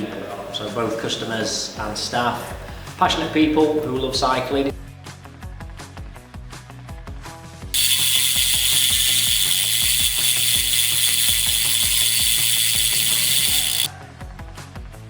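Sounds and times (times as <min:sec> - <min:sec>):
bicycle hub ratcheting buzz: 0:07.8 - 0:13.9.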